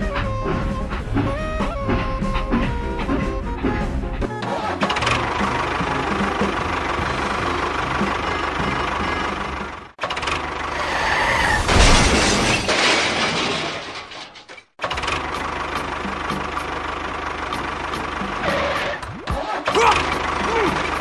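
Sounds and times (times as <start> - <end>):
rattling clatter: 0.0 - 10.6, 11.6 - 17.0.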